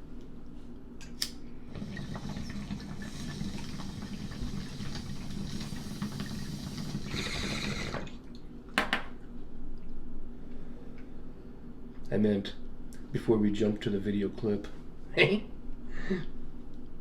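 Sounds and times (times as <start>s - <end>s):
water bong bubbling: 1.7s - 8.2s.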